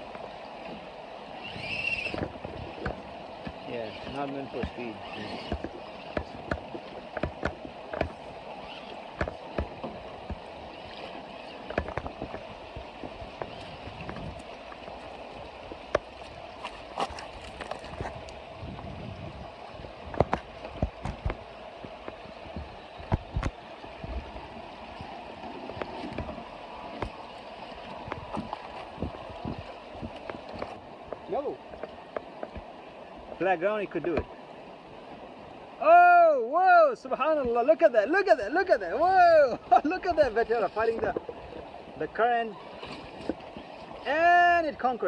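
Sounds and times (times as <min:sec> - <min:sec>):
creek water running: 0:00.0 - 0:45.0
splashes and clacks in water: 0:02.1 - 0:08.2, 0:09.2 - 0:10.5, 0:11.6 - 0:15.2, 0:15.9 - 0:18.3, 0:20.1 - 0:24.2, 0:25.6 - 0:32.7, 0:40.8 - 0:41.7, 0:42.7 - 0:44.1.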